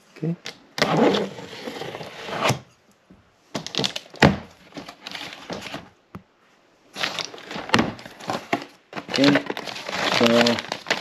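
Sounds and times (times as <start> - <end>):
cardboard rustling and scraping: 0.8 - 2.7, 4.6 - 5.9, 7.0 - 11.0.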